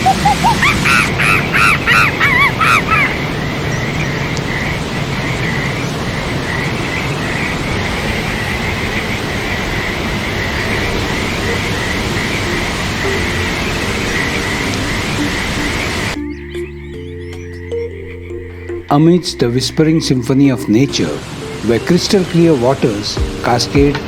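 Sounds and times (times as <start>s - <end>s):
steady rushing noise: 0.0s - 16.2s
faint bird chirping: 0.0s - 22.5s
bird calling rising notes: 0.0s - 23.7s.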